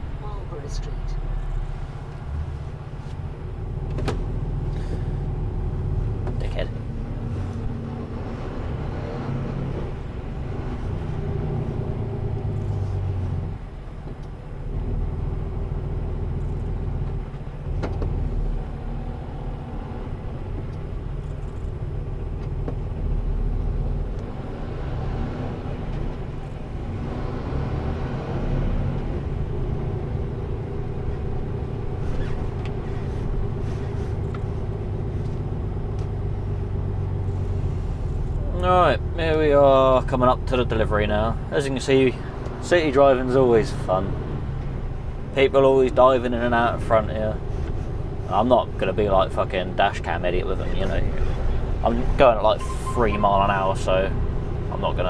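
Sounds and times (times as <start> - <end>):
diesel engine rumble: 0.0 - 55.0
road noise: 0.0 - 55.0.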